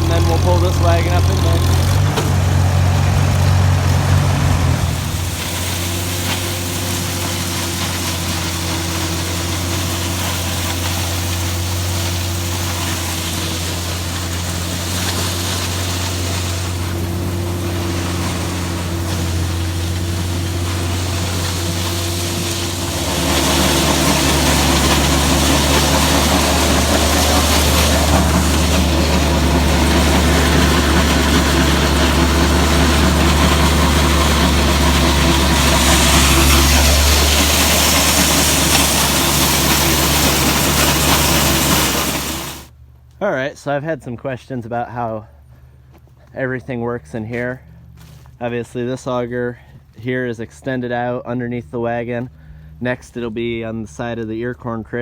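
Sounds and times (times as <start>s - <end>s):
tractor engine running: 0.0s - 43.0s.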